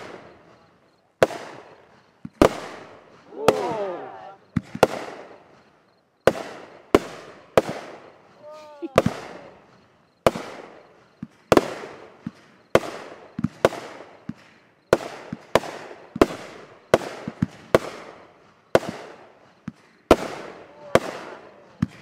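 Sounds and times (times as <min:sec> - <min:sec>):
fireworks bangs: 0:00.0 - 0:22.0.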